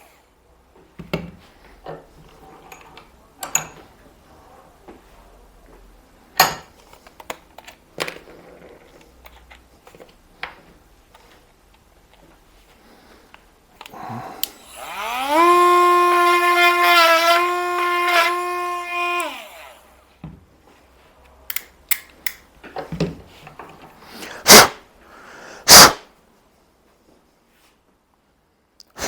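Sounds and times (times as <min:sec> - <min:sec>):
rotary tool whining: 0:14.5 - 0:20.0.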